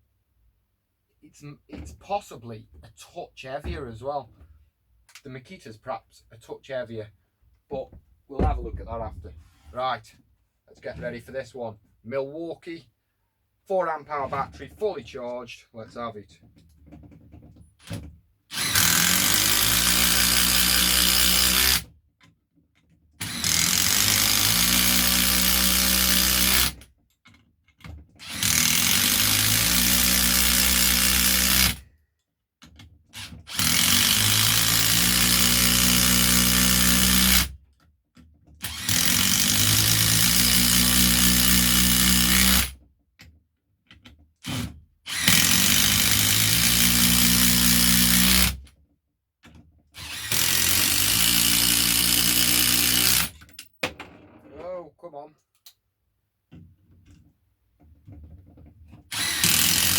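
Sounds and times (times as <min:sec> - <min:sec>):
impact driver driving screws: 0:17.8 - 0:21.9, 0:23.2 - 0:26.8, 0:28.2 - 0:31.8, 0:33.1 - 0:37.5, 0:38.6 - 0:42.8, 0:44.0 - 0:48.7, 0:50.0 - 0:53.6, 0:59.1 - 0:59.9.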